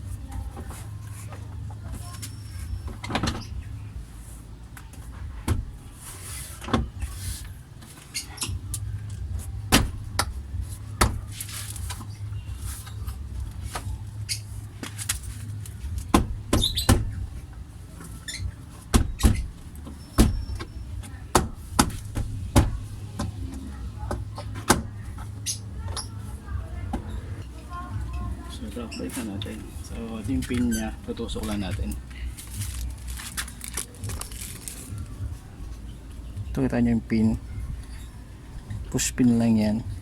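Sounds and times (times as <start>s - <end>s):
steady low hum: 0.0s - 40.0s
plastic scraping and rubbing: 32.4s - 35.2s.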